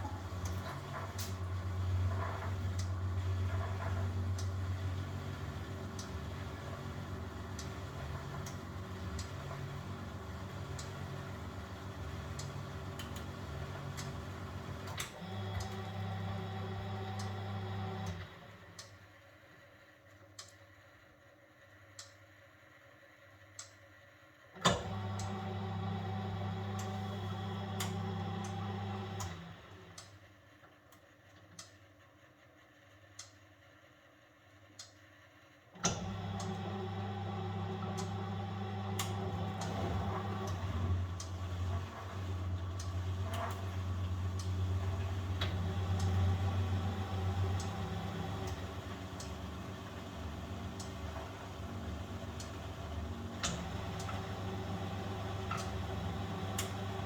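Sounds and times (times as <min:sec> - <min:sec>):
washing machine drum motor: 0:00.0 - 0:18.9, 0:24.6 - 0:30.1, 0:35.8 - 0:57.0
light ticks: 0:22.0 - 0:22.2, 0:23.6 - 0:23.8, 0:33.2 - 0:33.4.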